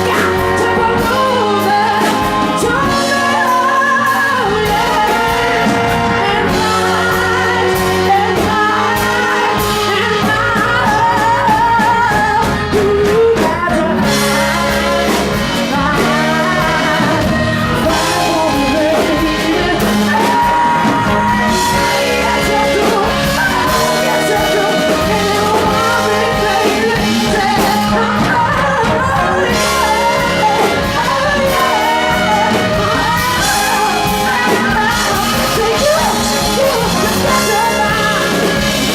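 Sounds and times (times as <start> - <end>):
live band playing: 0.0 - 38.9
person singing: 0.0 - 38.9.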